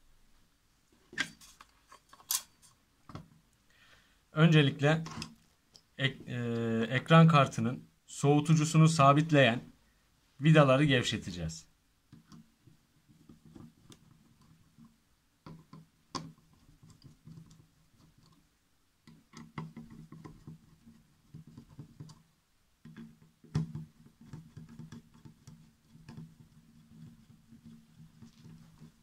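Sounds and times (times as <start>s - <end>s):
screwdriver clicking and scraping: 1.1s - 2.8s.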